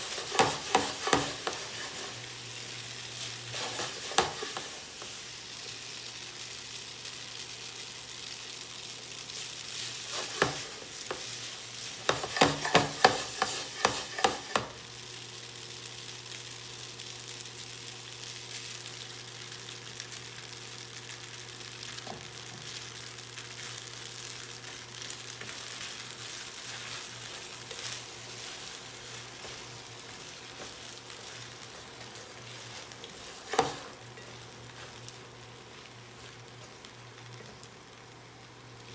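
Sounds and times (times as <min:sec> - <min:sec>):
food sizzling in a frying pan: 0:00.0 - 0:38.9
utensil knocking against pan: 0:12.0 - 0:14.7.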